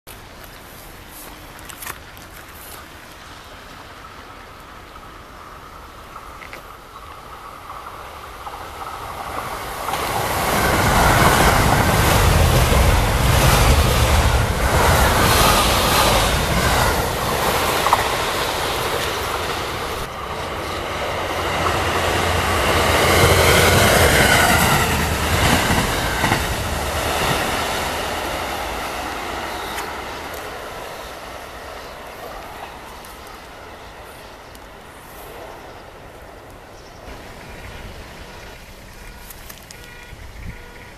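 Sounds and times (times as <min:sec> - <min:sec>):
train wheel and rail rush: 0:00.1 - 0:40.9
rising and falling train tones: 0:07.8 - 0:36.4.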